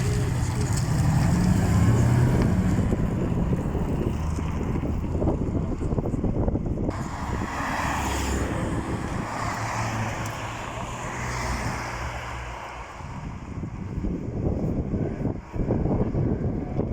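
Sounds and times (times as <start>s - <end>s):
car engine rumbling: 0.0s - 16.9s
tyre and road noise: 0.0s - 16.9s.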